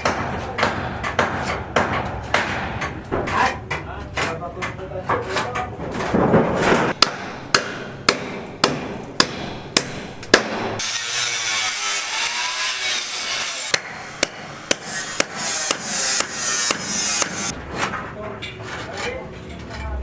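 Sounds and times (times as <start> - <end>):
hammer blows: 6.9 - 17.5.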